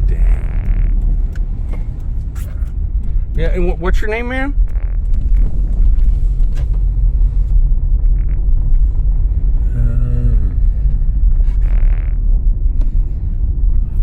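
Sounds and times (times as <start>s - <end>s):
car interior rumble: 0.0s - 14.0s
mumbled voice: 9.6s - 10.7s.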